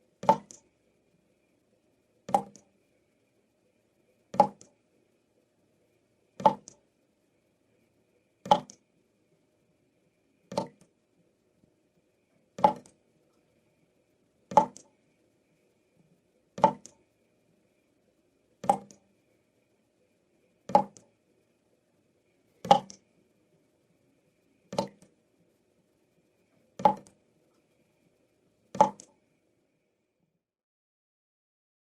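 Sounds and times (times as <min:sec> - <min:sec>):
water dripping from a tap: 0:00.2 - 0:00.6, 0:02.3 - 0:02.6, 0:04.4 - 0:04.7, 0:06.4 - 0:06.8, 0:10.5 - 0:10.9, 0:12.6 - 0:12.9, 0:14.5 - 0:14.9, 0:16.6 - 0:17.0, 0:18.6 - 0:19.0, 0:20.7 - 0:21.0, 0:24.7 - 0:25.1, 0:26.8 - 0:27.1, 0:28.8 - 0:29.1.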